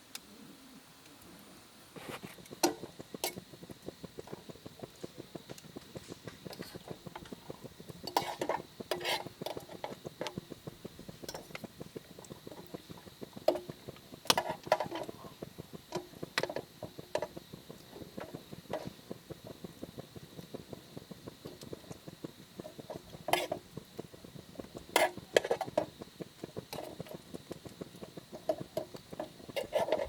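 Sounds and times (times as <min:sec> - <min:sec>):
light crackle of ticks: 0:00.1 - 0:00.3, 0:01.0 - 0:30.0.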